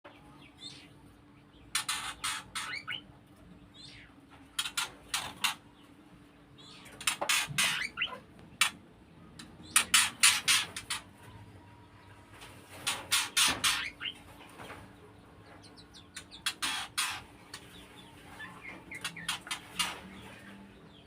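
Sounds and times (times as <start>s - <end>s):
young birds giving harsh hissing calls: 16.2s - 17.8s.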